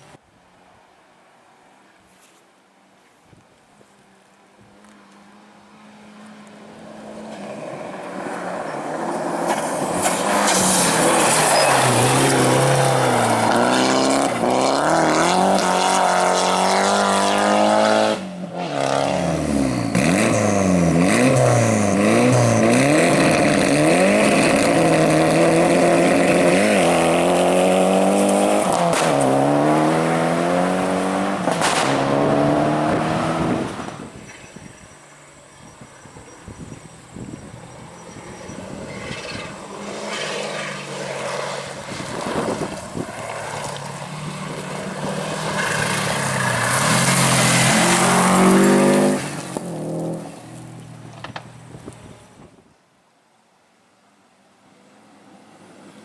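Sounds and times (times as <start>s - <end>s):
rally car engine revving: 6.8s - 34.1s, 37.6s - 50.4s.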